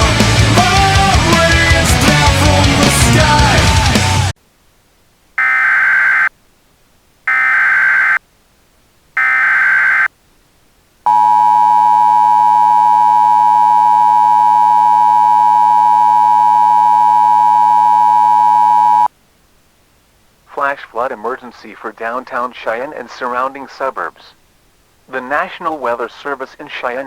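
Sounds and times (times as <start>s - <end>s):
warbling data bursts: 5.4s - 6.3s, 7.3s - 8.2s, 9.2s - 10.1s
two-tone alert signal: 11.1s - 19.1s.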